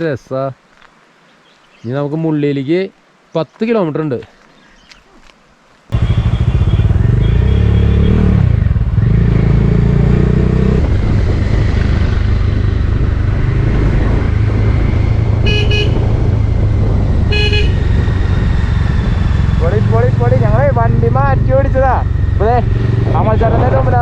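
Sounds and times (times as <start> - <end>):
motorcycle engine running: 5.9 - 24.0
vehicle horn beeps: 15.4 - 16.2, 17.2 - 17.9.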